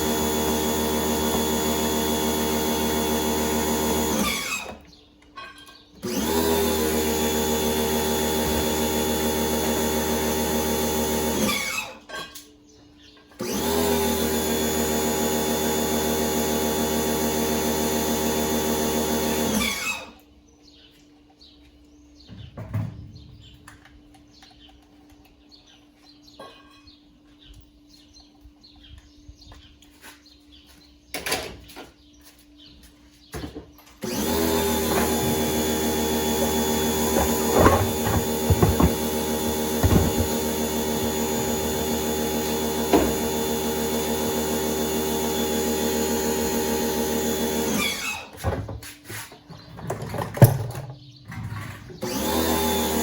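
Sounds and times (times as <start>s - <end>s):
electric motor running: 0.0s - 4.8s, 6.0s - 12.0s, 13.4s - 20.2s, 34.0s - 48.3s, 52.0s - 53.0s.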